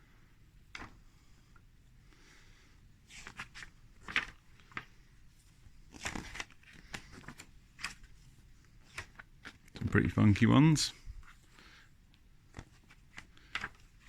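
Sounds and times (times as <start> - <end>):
book pages rustling: 3.0 - 9.9, 12.2 - 14.0.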